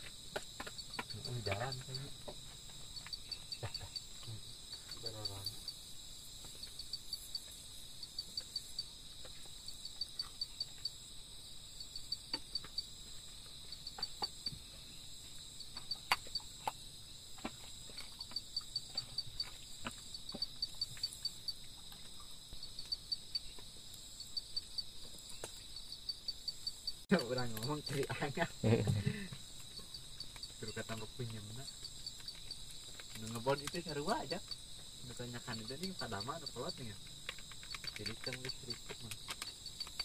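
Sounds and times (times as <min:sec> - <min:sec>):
sharp ticks and clicks: 0:00.0 - 0:05.8, 0:15.6 - 0:28.5, 0:29.3 - 0:40.0
crickets chirping: 0:00.0 - 0:40.0
thin high insect buzz: 0:00.0 - 0:40.0.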